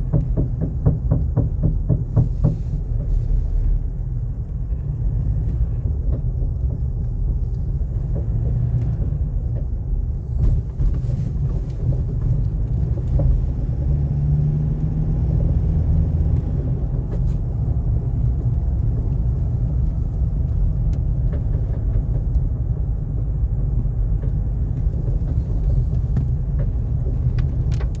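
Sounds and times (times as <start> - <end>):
clunking knocks: 0.0 - 3.3
pickup engine rumble: 0.0 - 28.0.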